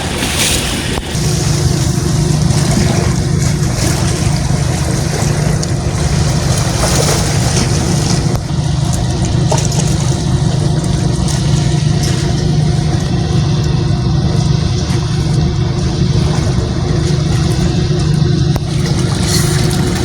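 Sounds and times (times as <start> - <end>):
engine running steadily: 0.0 - 20.0.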